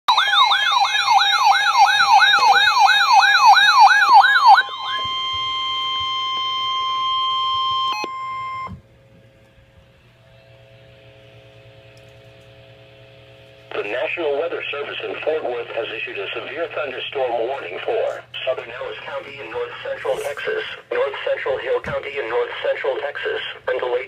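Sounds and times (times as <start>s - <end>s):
electronic siren sweeping: 0.1s - 8.8s
faint steady hum: 1.1s - 24.0s.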